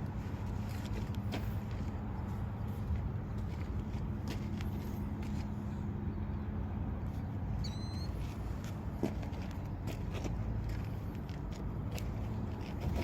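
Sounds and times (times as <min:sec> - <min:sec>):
light footsteps: 0:00.0 - 0:05.6, 0:08.2 - 0:13.0
low mechanical hum: 0:00.0 - 0:13.0.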